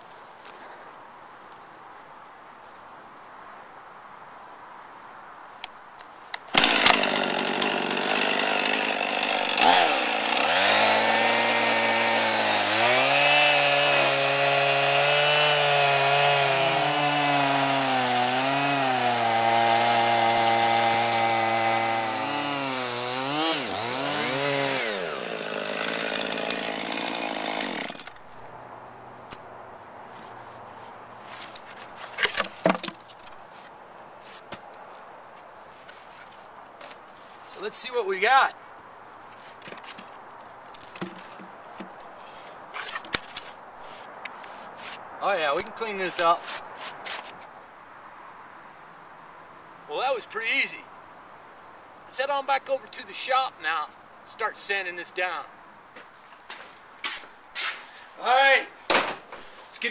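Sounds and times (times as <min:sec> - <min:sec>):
chainsaw cutting log: 0:06.4 - 0:28.3, 0:31.4 - 0:33.0, 0:40.8 - 0:42.0
sharp knocks: 0:58.9 - 0:59.4.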